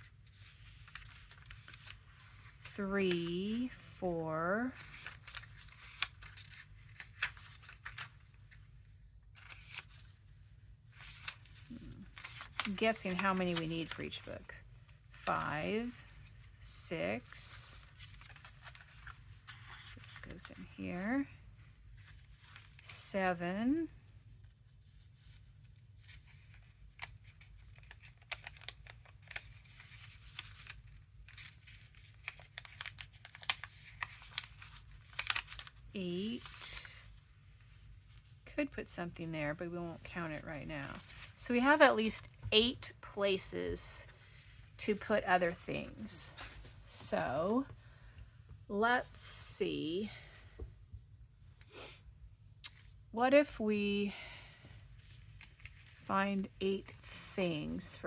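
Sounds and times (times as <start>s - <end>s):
paper rustling: 0.0s - 14.3s, 15.1s - 23.0s, 24.4s - 38.7s, 40.0s - 42.7s, 44.1s - 47.7s, 55.0s - 56.1s.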